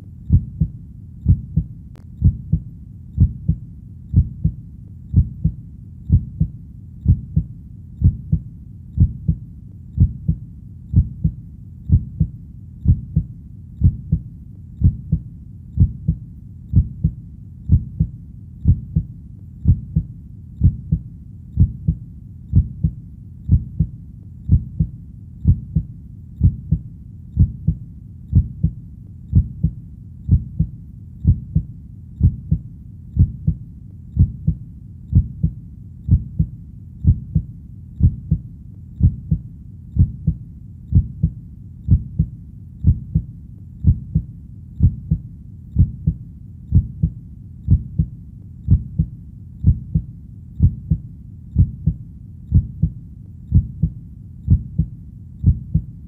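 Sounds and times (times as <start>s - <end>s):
heartbeat thumps: 0.0s - 56.0s.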